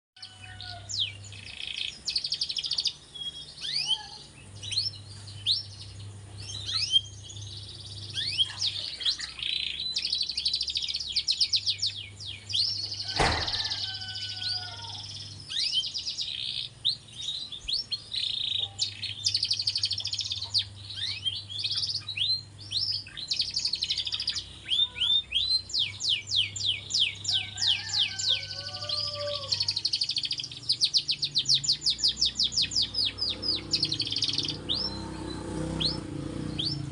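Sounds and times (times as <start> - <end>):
canary singing trills: 0.2 - 36.9
knock: 13.2 - 13.6.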